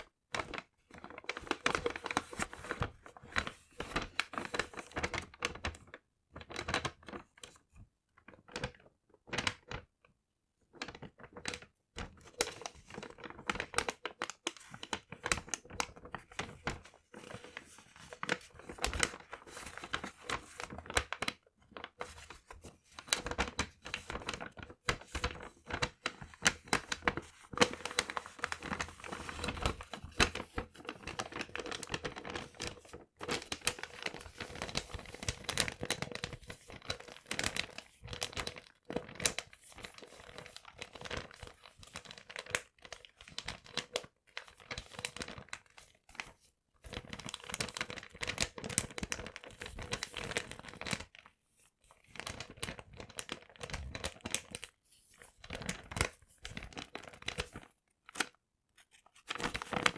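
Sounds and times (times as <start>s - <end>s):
paper crinkling: 12.4s - 51.2s, 51.9s - 59.9s.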